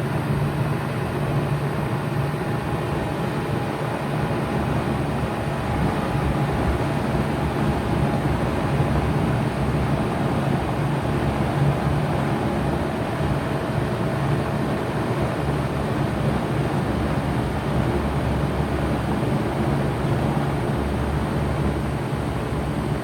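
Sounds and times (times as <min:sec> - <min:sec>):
fan air rushing: 0:00.0 - 0:23.0.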